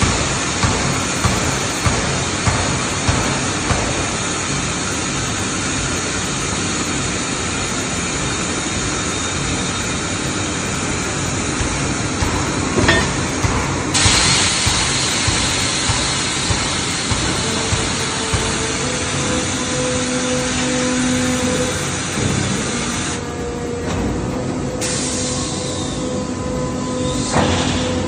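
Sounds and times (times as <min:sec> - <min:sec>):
industrial forging machinery din: 0:00.0 - 0:05.5, 0:09.0 - 0:25.1
loud hiss: 0:00.0 - 0:23.2, 0:24.8 - 0:26.0.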